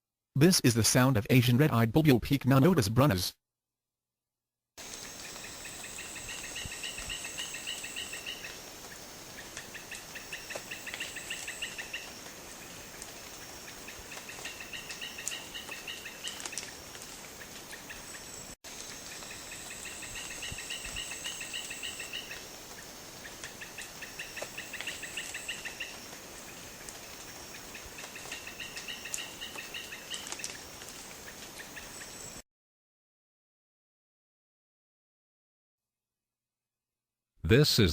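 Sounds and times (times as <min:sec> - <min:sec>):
bulbul singing: 0:05.0 - 0:16.8.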